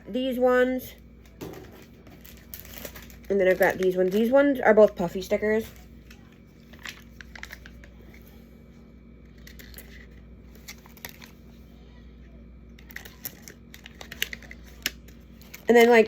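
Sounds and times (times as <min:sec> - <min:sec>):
plastic packaging crinkling: 0:01.3 - 0:08.3, 0:09.2 - 0:11.4, 0:12.8 - 0:16.0.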